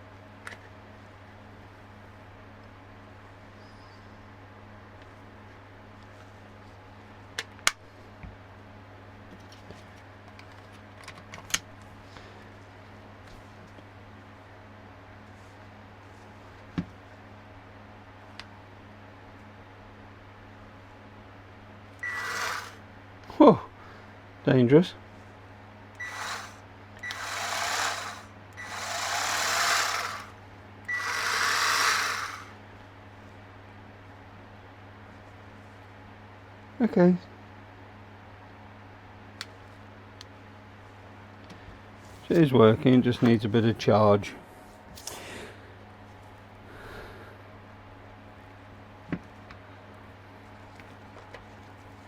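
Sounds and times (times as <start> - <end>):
steady low hum: 0.0 - 52.0
electric carving knife buzzing: 22.0 - 22.8, 26.0 - 32.6.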